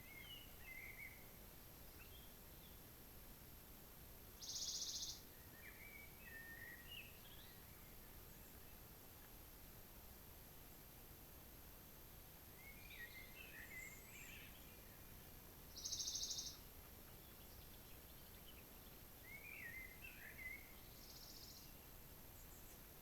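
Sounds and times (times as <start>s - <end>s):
low steady hiss: 0.0s - 23.0s
songbird warbling: 15.8s - 16.6s.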